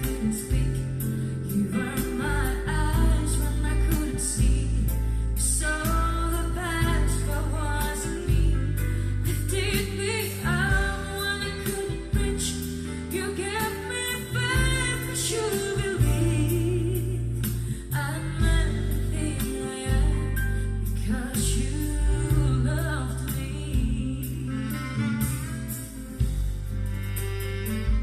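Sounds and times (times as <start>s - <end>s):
song over loudspeakers: 0.0s - 28.0s.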